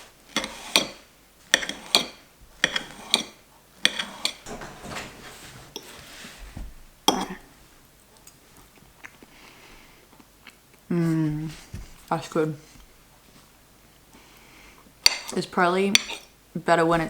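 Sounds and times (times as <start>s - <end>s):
utensils and crockery clinking: 0.4s - 6.2s.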